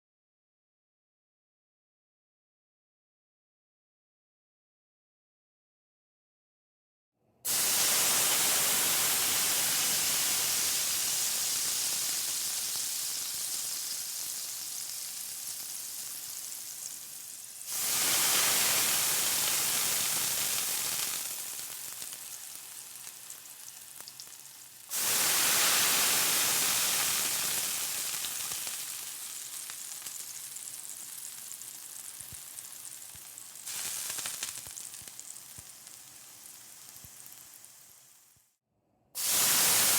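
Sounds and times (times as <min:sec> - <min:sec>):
water sizzling in hot pan: 0:07.5 - 0:38.5, 0:39.2 - 0:39.9.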